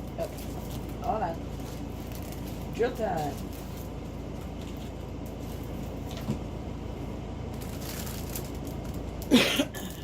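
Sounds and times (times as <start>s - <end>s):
low room hum: 0.0s - 10.0s
person clearing throat: 9.3s - 10.0s.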